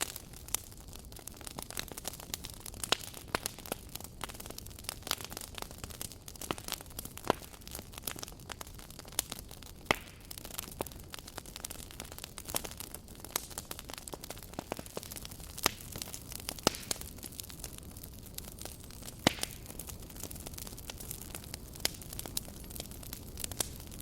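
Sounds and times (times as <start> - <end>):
burning wood popping and snapping: 0.0 - 24.0
soft steady fire hiss: 0.0 - 24.0.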